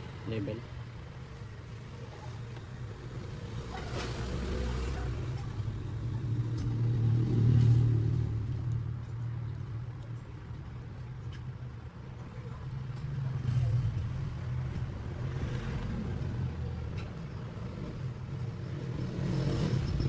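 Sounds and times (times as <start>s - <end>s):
vehicle engine passing by: 3.1s - 9.0s, 12.6s - 20.0s.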